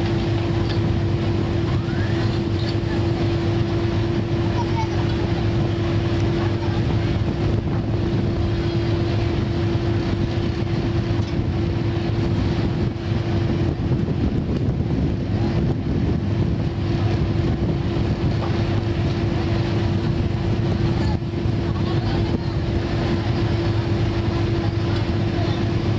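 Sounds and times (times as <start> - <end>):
boat engine running: 0.0 - 25.9.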